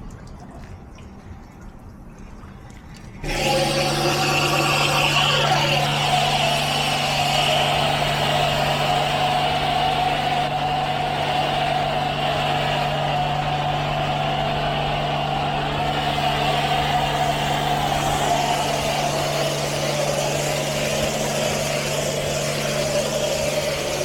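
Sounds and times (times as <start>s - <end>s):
car wash machinery humming: 3.2s - 24.0s.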